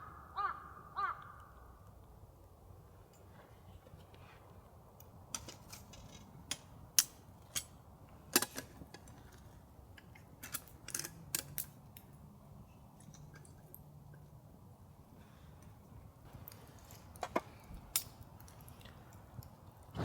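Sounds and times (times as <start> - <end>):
campfire wood crackling: 13.1 - 20.0.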